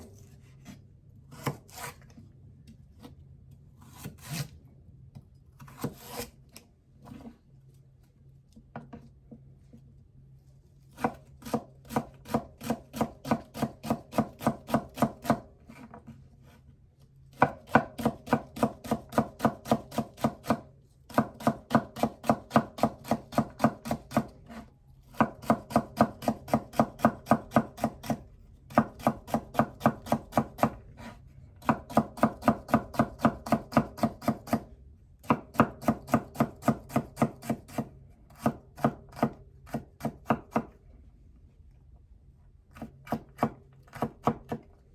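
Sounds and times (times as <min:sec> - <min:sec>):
knife chopping on cutting board: 0:00.6 - 0:01.9, 0:17.4 - 0:40.8, 0:42.8 - 0:44.6.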